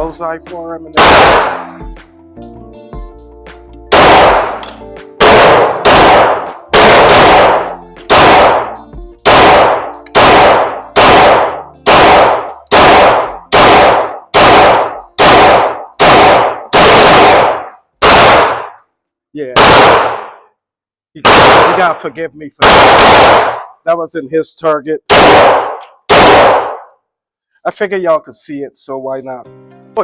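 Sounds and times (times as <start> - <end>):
pistol shots with echo: 1.0 - 1.8, 3.9 - 18.8, 19.5 - 20.5, 21.2 - 23.8, 25.1 - 26.9.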